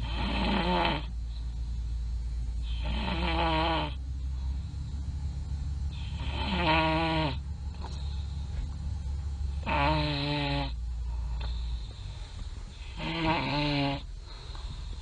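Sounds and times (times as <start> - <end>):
person snoring loudly: 0.0 - 1.1, 2.7 - 4.0, 6.0 - 7.4, 9.6 - 10.8, 12.9 - 14.1.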